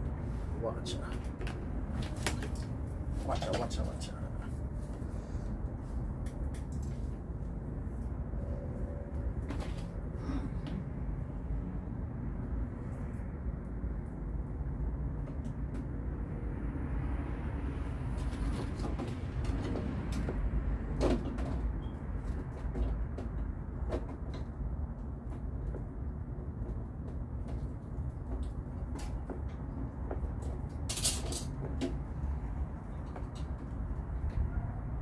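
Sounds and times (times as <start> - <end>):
steady low rumble: 0.0 - 21.0.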